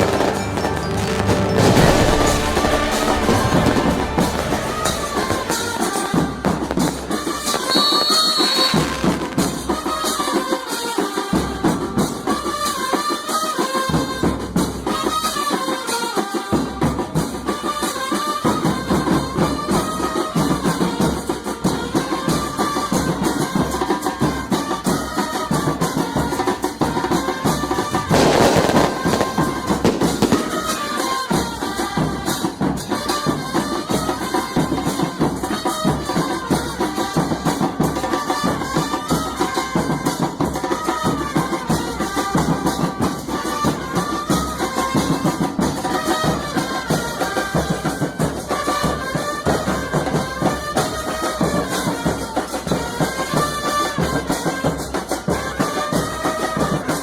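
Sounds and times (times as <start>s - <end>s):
loud noisy swell: 0.0s - 6.6s
music with drums and percussion: 0.0s - 57.0s.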